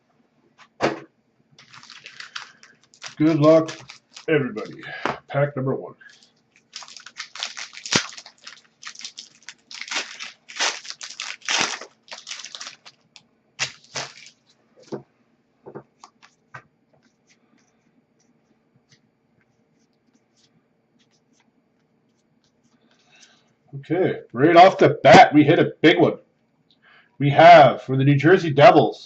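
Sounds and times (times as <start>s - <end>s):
cards clicking and rustling: 1.6s - 4.8s, 6.1s - 13.0s, 13.6s - 15.0s, 15.9s - 16.4s
wrapper tearing and crinkling: 1.6s - 4.8s, 6.1s - 14.5s.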